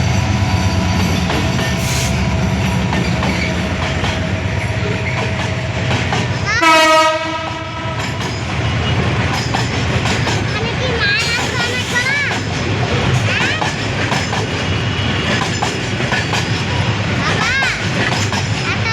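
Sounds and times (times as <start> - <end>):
train wheels rumbling and clattering: 0.0 - 18.9
train horn blast: 6.6 - 8.2.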